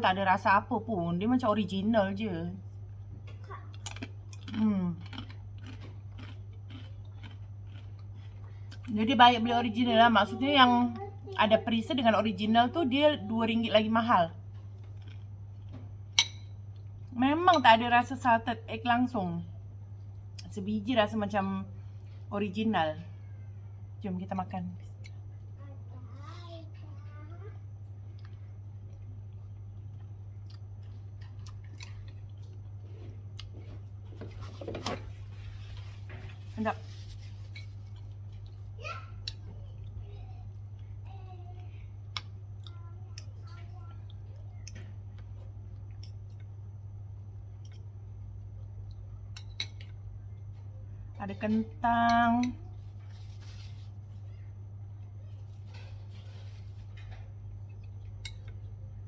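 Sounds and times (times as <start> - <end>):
steady low hum: 0.0 - 59.0
person crunching and chewing: 3.8 - 8.9.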